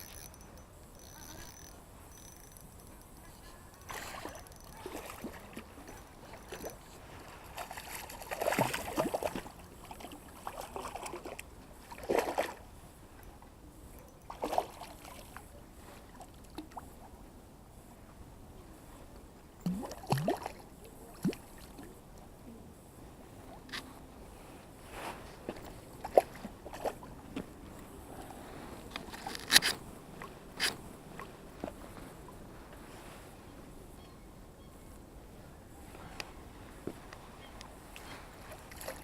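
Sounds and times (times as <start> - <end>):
water splashing and sloshing: 3.8 - 12.7, 14.3 - 15.4, 19.6 - 21.9, 25.2 - 27.6, 37.9 - 39.0.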